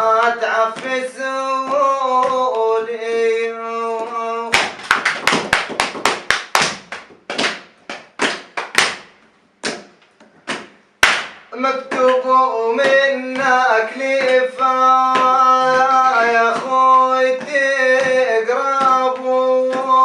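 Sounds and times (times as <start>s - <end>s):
sharp percussive hits: 4.5s - 12.2s.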